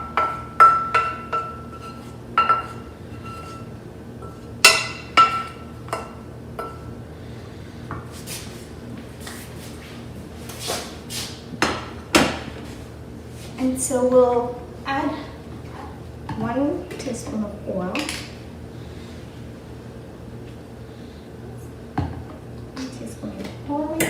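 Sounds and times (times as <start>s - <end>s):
utensil clinking on cookware: 0.0s - 3.6s, 4.2s - 6.9s.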